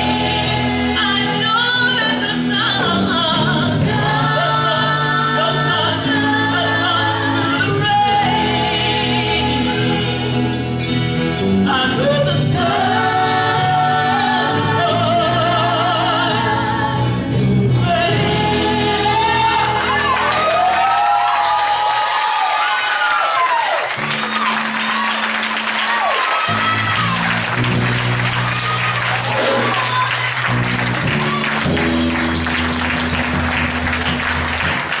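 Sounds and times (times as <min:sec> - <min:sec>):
choir singing gospel: 0:00.0 - 0:22.2, 0:28.4 - 0:34.2
shouts and whoops: 0:19.6 - 0:27.5, 0:28.4 - 0:30.6
congregation applauding: 0:19.6 - 0:35.0
instrumental accompaniment: 0:23.9 - 0:35.0.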